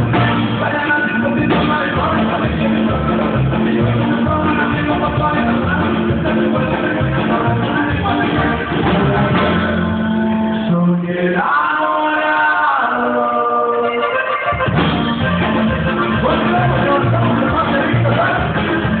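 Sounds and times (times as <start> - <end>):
held accordion notes: 0.0 - 11.3, 13.0 - 19.0
band playing with singing: 0.0 - 19.0.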